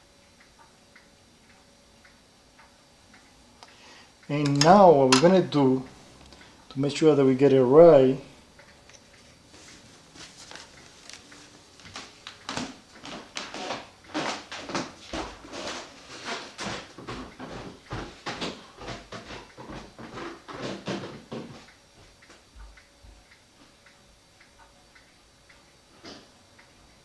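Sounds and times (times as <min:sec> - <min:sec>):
clock ticking faintly: 0:00.0 - 0:09.3, 0:10.4 - 0:27.0.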